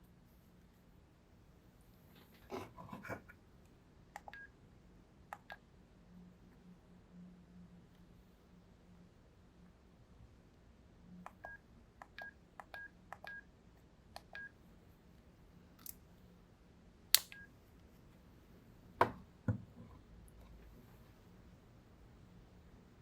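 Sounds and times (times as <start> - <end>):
phone key presses with beeps: 4.2 - 4.5, 11.3 - 13.4, 14.2 - 14.5.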